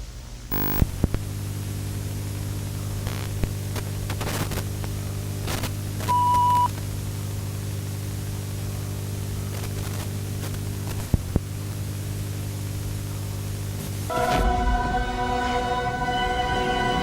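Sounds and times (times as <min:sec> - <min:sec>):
static hiss: 0:00.0 - 0:16.0
electrical hum: 0:00.0 - 0:17.0
crackles: 0:00.5 - 0:14.5
high beep: 0:06.1 - 0:06.7.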